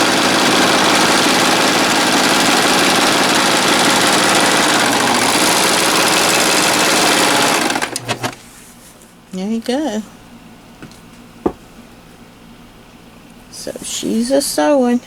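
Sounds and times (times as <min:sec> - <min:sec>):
sewing machine running: 0:00.0 - 0:08.4.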